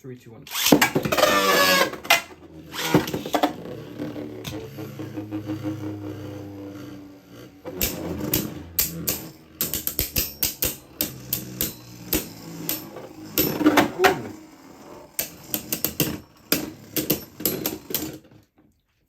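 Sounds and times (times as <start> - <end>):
spinning tops humming: 0.5 - 18.3
spinning tops clicking and knocking: 7.7 - 18.2.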